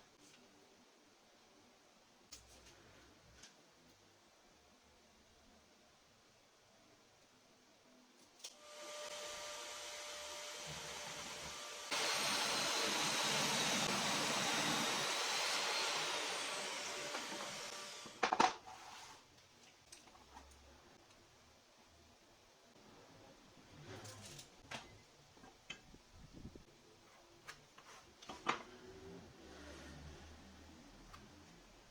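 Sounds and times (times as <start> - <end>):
power tool motor whining: 8.6 - 18.2.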